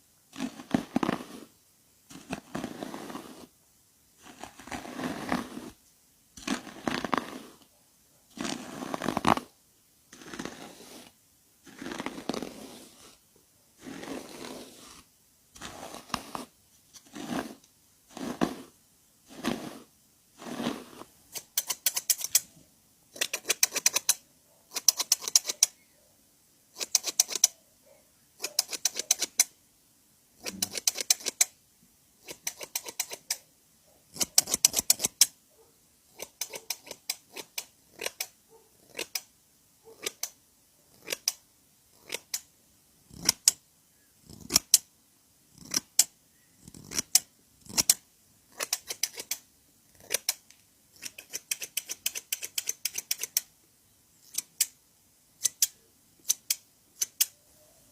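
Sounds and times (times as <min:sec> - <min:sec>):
scissors snipping: 0:36.2 - 0:38.3, 0:38.9 - 0:39.3, 0:46.7 - 0:48.0, 0:48.6 - 0:49.4, 0:50.0 - 0:50.4.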